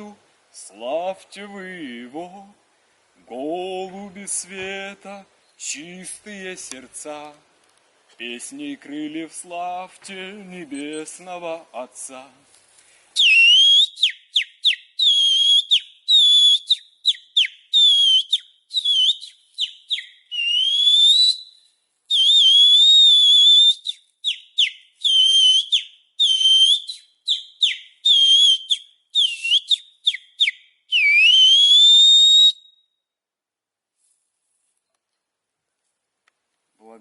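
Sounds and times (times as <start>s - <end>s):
high shrill whistling: 13.2s - 33.1s.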